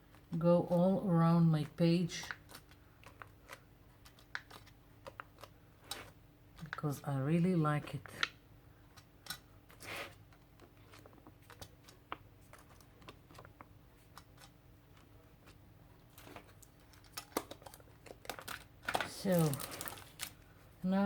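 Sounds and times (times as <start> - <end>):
paper rustling: 16.1 - 20.4.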